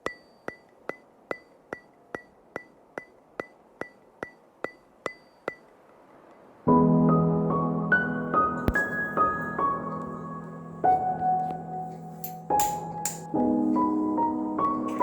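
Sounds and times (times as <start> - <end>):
sharp ringing ticks: 0.0 - 5.7.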